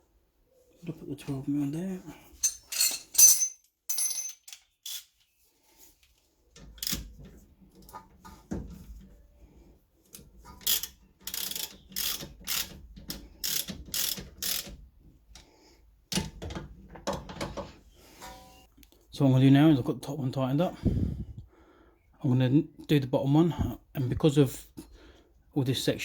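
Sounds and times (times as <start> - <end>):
socket ratchet clicking: 10.6 - 12.8, 13.4 - 14.7.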